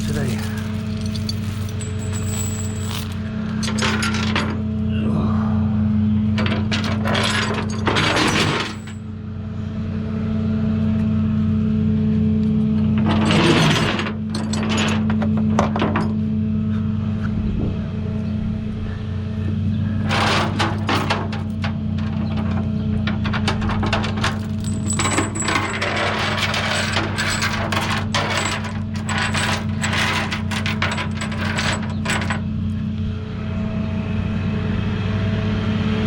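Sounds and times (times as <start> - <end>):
metallic clinks of tools: 0.0 - 4.4.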